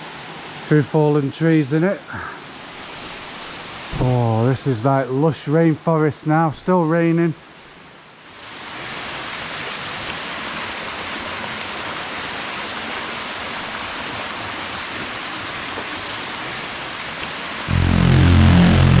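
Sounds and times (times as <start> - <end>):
rushing stream: 0.0 - 17.7
heavy rain falling: 2.8 - 4.9, 8.8 - 19.0.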